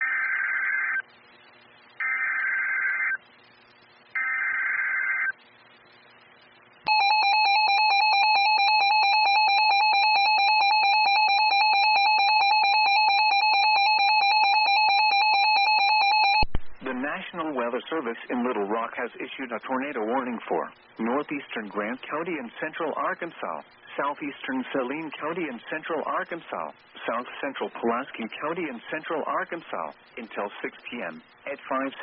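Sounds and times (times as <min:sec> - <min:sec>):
screechy data warble bursts: 0:00.0 - 0:01.0, 0:01.9 - 0:03.2, 0:04.1 - 0:05.4.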